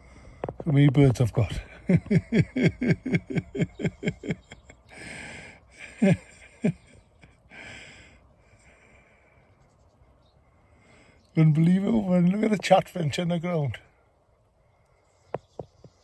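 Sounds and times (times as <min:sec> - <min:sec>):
man chuckling: 0:01.5 - 0:08.1
wheezy breaths: 0:04.9 - 0:05.7, 0:07.5 - 0:09.6.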